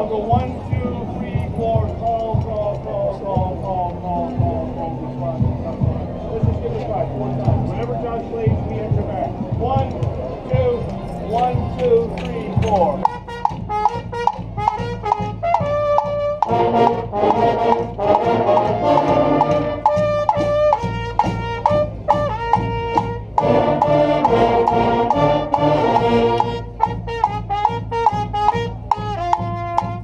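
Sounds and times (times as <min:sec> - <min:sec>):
steady drum beat: 0:00.0 - 0:30.0
massed horns answering: 0:13.0 - 0:30.0
trumpet call: 0:13.0 - 0:30.0.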